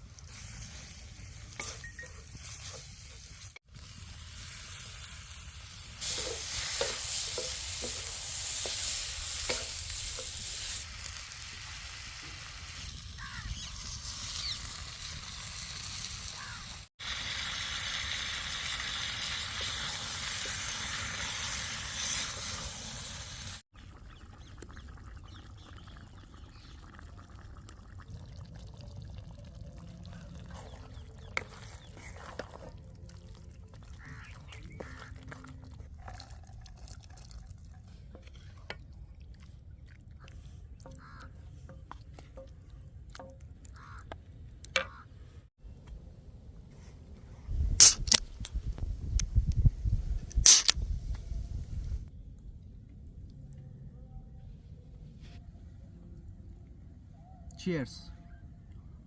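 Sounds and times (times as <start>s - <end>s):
curry sizzling in a pan: 0.3s - 23.6s.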